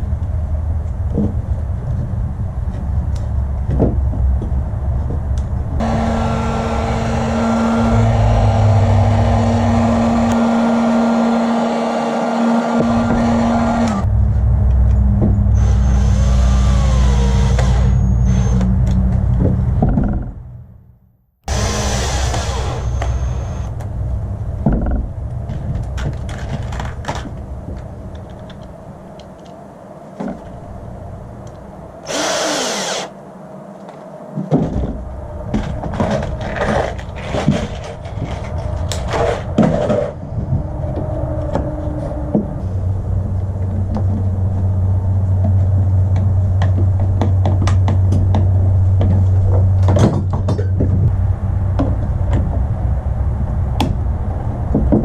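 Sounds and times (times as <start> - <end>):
steady low hum: 0.0 - 55.0
power tool drone: 5.8 - 14.1, 15.5 - 18.7, 21.5 - 23.7, 32.0 - 33.2
tools and parts knocking: 24.6 - 27.3, 49.8 - 51.0.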